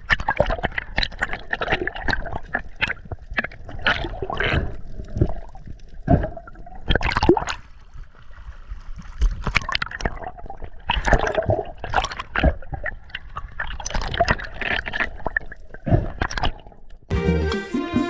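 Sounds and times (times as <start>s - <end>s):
water splashing and gurgling: 0.0s - 16.9s
music: 17.1s - 18.0s.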